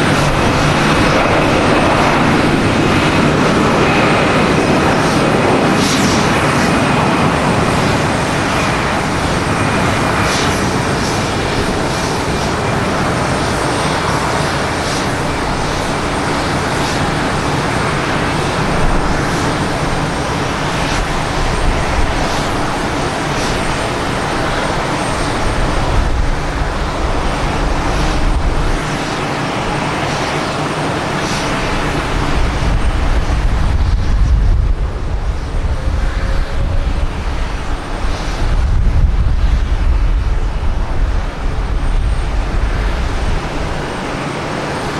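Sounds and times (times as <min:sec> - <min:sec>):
jet engines roaring: 0:00.0 - 0:44.9.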